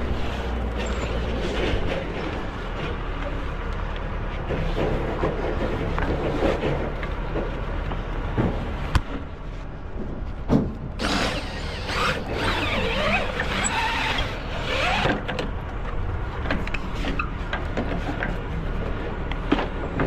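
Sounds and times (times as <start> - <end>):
metal creaking and squealing: 0.0 - 2.9, 11.0 - 15.4.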